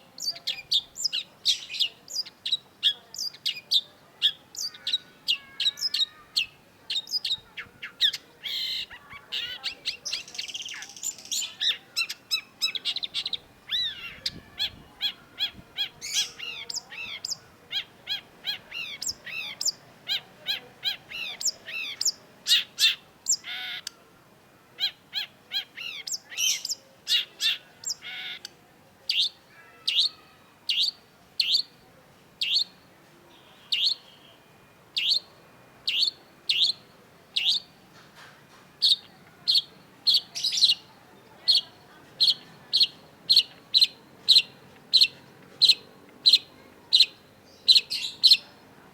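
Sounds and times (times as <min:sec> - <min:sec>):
shrike singing chirps: 0:00.2 - 0:23.6, 0:33.4 - 0:37.7.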